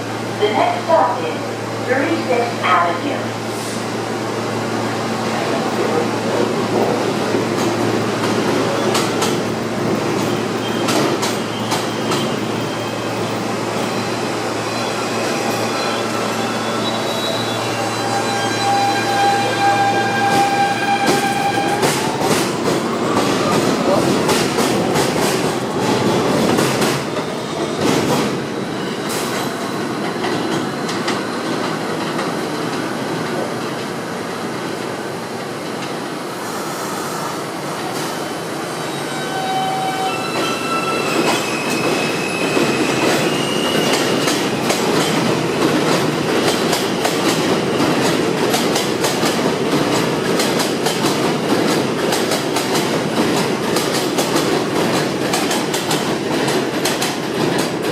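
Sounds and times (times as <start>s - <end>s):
train rumble: 17.8s - 38.3s.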